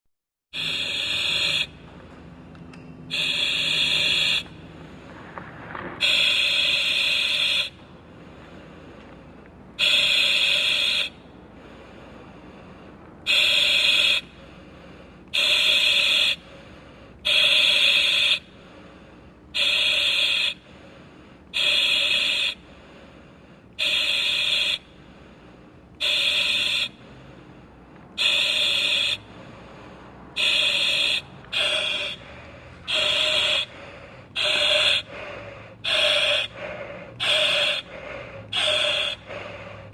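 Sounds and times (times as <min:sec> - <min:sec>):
breathing through oxygen mask: 0:00.6 - 0:01.8, 0:03.1 - 0:05.3, 0:06.0 - 0:39.9
steady low hiss: 0:00.6 - 0:13.3.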